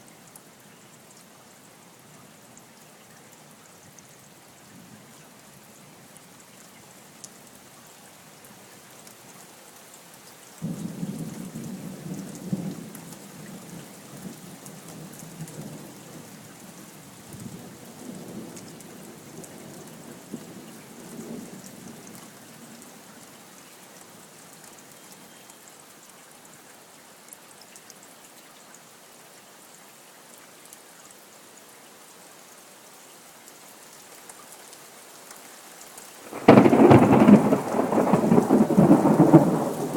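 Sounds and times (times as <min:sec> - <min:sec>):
steady rain: 0:00.0 - 0:39.9
thunder rumbling: 0:36.3 - 0:39.9.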